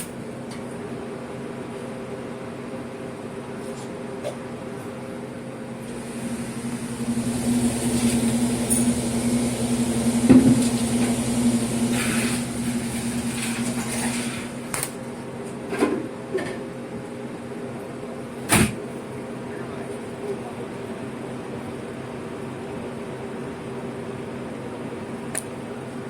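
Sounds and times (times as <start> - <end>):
low machine hum: 5.3 - 15.5.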